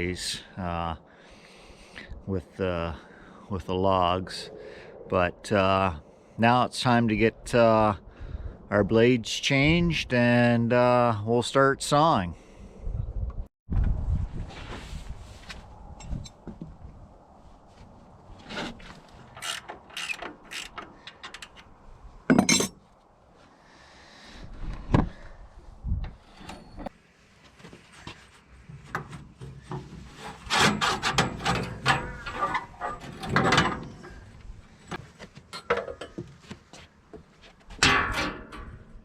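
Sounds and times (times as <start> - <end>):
clicks and knocks of parts: 19.1 - 22.7, 28.9 - 36.4, 37.7 - 39.0
dense rattling: 30.1 - 34.5.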